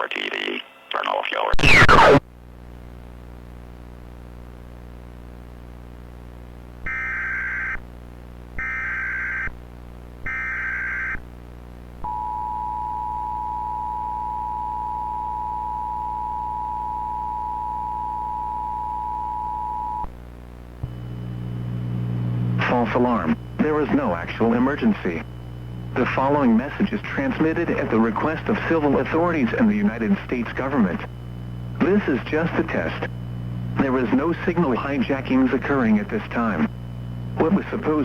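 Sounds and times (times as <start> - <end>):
deep hum: 12.0 - 37.5
electrical buzz: 20.6 - 38.0.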